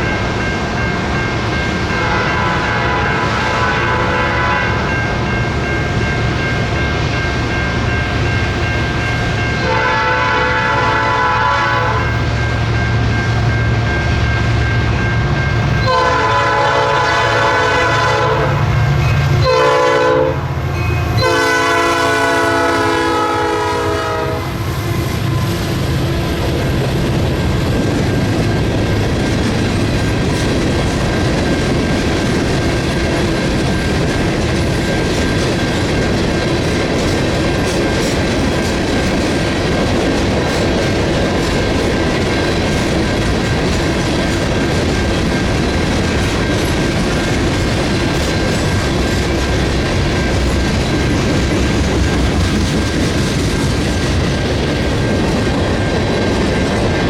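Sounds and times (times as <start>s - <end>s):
train wheels on rails: 0.0s - 57.0s
train horn blasts: 1.9s - 5.0s, 9.6s - 12.2s, 15.8s - 25.5s
wheels clacking over rail joints: 27.0s - 57.0s.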